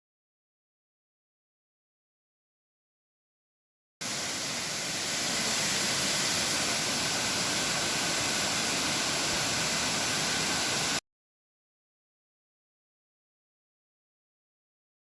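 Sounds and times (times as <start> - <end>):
waterfall rushing: 4.0 - 11.0.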